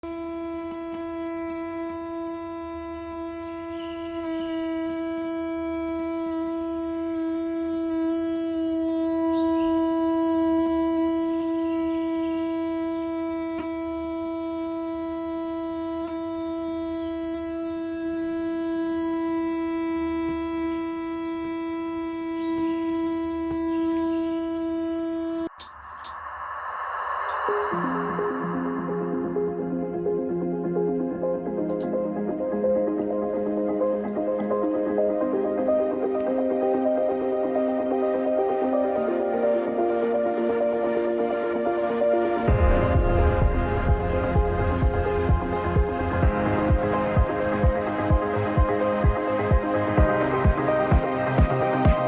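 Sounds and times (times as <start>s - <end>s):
steady electronic tone: 21.8s - 49.2s.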